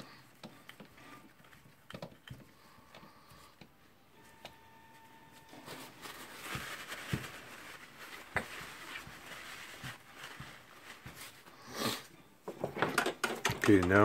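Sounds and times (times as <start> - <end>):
faint rustling: 5.0 - 12.1.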